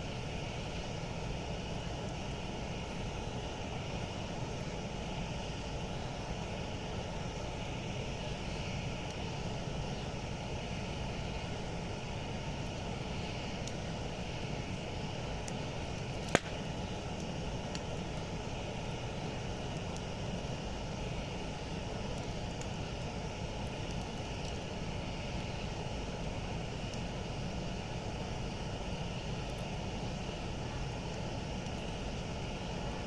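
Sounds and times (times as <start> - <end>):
campfire burning rumble: 0.0 - 33.0
fire crackles: 0.0 - 33.0
sharp fire pop: 16.2 - 16.7.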